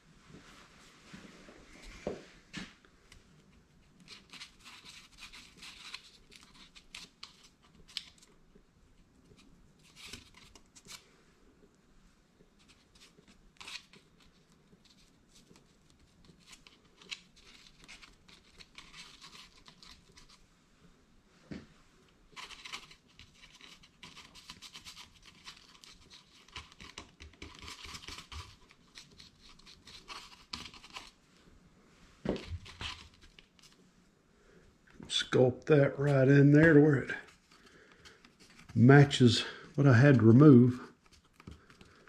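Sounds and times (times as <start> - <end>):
faint scraping and rubbing: 28.7 - 42.0.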